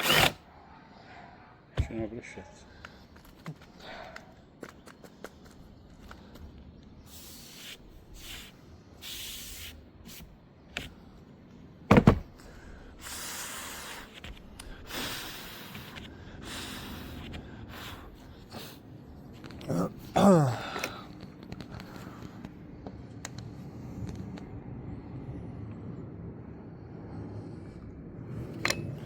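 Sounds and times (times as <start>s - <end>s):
handling rubbing and scraping: 13.6s - 18.3s.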